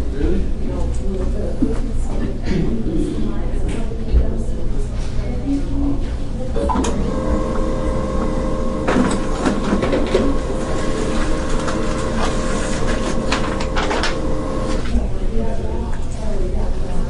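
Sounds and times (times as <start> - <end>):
office machine whine: 6.4 - 15.2.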